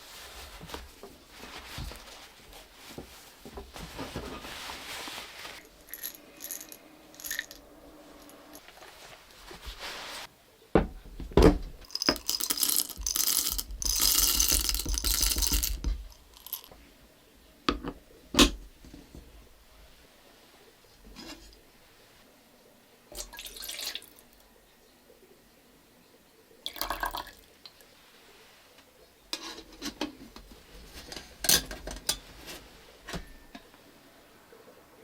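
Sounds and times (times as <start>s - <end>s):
small hard objects clicking: 11.8s - 16.7s.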